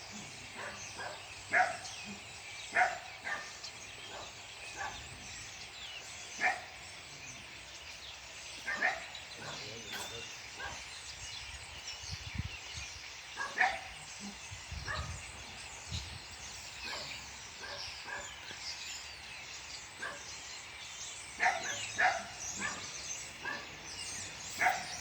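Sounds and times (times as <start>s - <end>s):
small birds chirping: 0.0s - 25.0s
dog barking: 0.6s - 5.0s, 6.4s - 6.7s, 8.6s - 10.8s, 13.4s - 14.0s, 16.8s - 18.5s, 20.0s - 20.3s, 21.4s - 25.0s.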